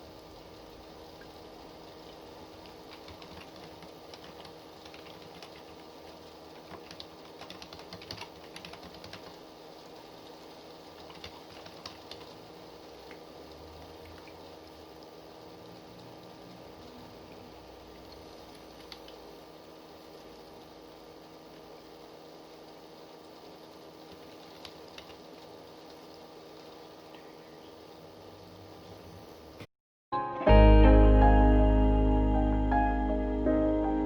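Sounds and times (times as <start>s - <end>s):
faint steady hum: 0.0s - 34.0s
typing on computer keyboard: 2.5s - 5.8s, 6.6s - 9.4s, 11.0s - 12.4s, 18.8s - 19.2s, 24.1s - 25.2s.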